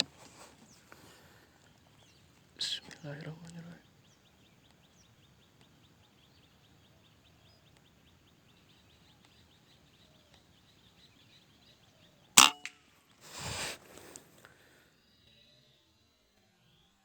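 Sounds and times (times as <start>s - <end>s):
air rifle shot crack: 12.4s - 12.7s.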